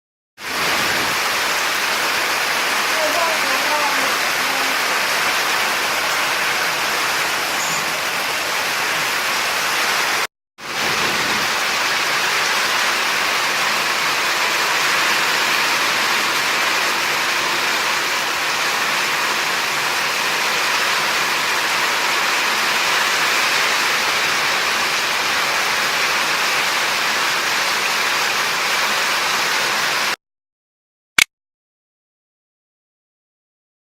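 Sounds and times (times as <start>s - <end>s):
heavy rain downpour: 0.4s - 30.2s.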